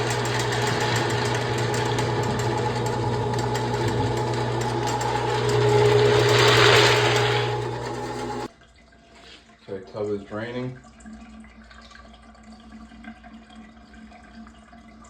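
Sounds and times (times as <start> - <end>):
drain cleaning machine motor hum: 0.0 - 8.5.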